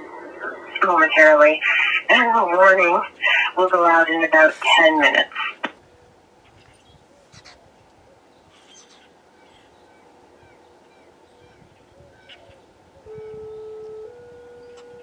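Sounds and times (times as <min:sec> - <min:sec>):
bird chirps: 0:08.2 - 0:15.0
loud steady single-pitched tone: 0:13.0 - 0:15.0.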